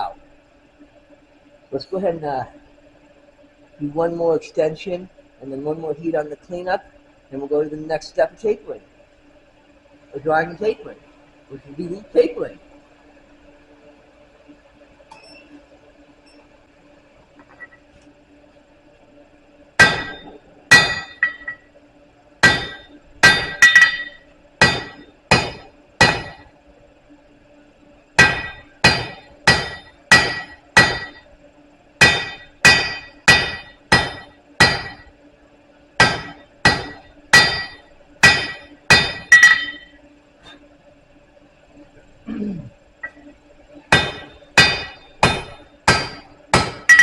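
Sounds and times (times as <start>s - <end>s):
hammer striking steel on anvil: 19.8s - 21.6s, 22.4s - 26.5s, 28.2s - 31.2s, 32.0s - 35.1s, 36.0s - 40.0s, 43.9s - 47.0s.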